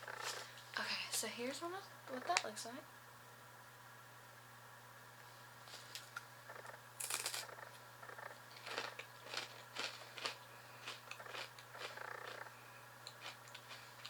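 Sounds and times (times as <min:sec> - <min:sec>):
low steady hum: 0:00.0 - 0:14.0
crunchy snack being chewed: 0:05.7 - 0:14.0.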